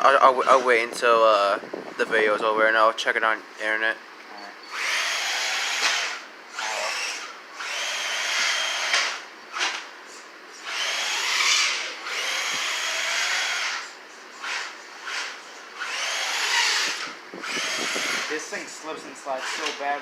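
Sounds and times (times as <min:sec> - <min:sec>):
rc truck motor and gears whining: 0:04.6 - 0:09.9, 0:10.5 - 0:20.0.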